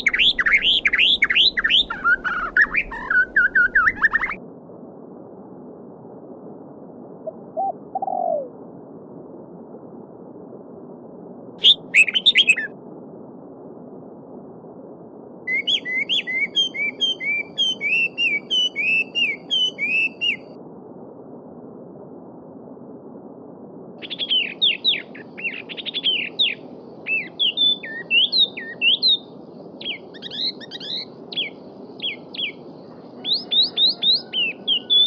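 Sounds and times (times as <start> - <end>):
songbirds calling: 0.0 - 4.4, 11.6 - 12.7, 15.5 - 20.5, 24.0 - 35.0.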